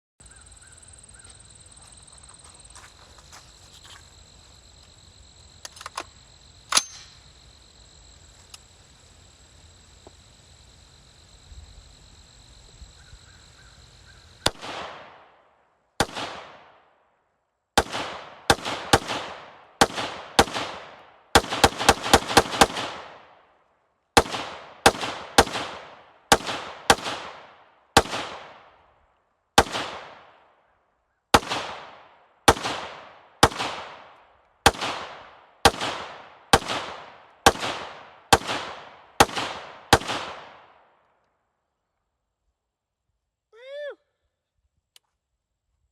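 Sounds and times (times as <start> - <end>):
rifle shots echoing: 14.4 - 16.9, 17.8 - 23.4, 24.2 - 28.8, 29.6 - 30.5, 31.3 - 40.9.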